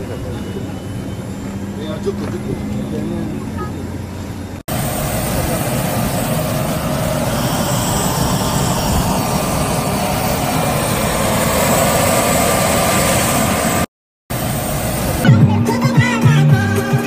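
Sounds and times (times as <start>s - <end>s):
loud engine noise: 0.0s - 17.0s
music with a beat: 15.2s - 17.0s.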